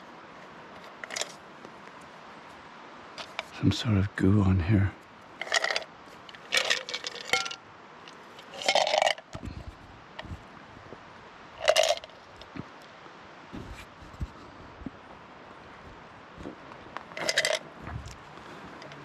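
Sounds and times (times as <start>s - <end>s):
small hard objects scraping and clinking: 0.8s - 1.4s, 5.4s - 9.3s, 11.6s - 12.2s, 17.2s - 17.6s.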